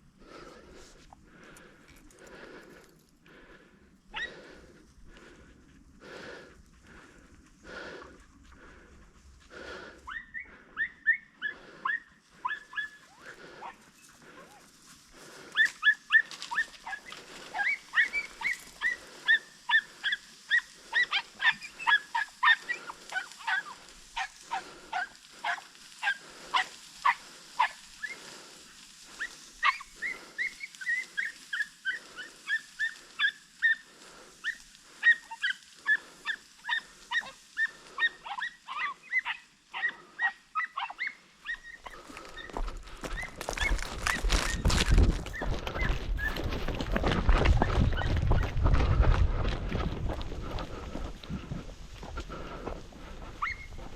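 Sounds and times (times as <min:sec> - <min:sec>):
hounds yelping: 0:04.1 - 0:04.8, 0:10.0 - 0:48.6, 0:52.2 - 0:53.9.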